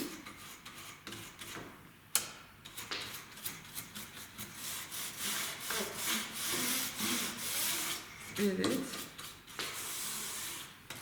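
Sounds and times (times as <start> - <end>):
brush scrubbing: 3.1 - 10.8.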